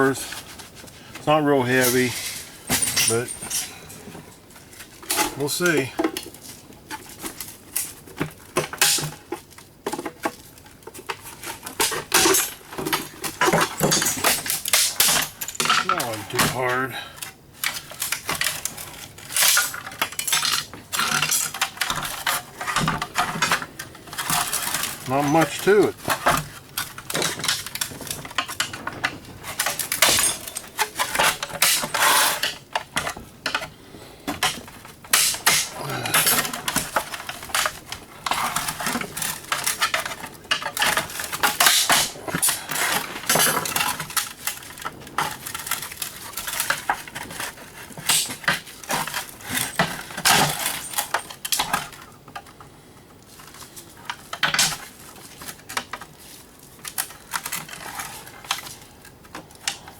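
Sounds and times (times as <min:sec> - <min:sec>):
metal parts clinking and clattering: 0:01.6 - 0:04.4, 0:11.6 - 0:16.8, 0:17.6 - 0:33.7, 0:34.3 - 0:52.0.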